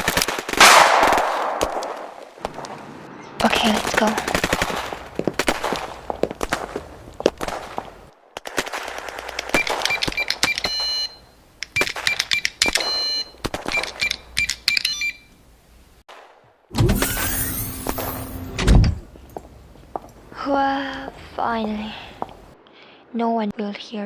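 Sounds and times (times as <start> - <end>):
automatic gunfire: 0.0 - 2.2, 3.7 - 5.9.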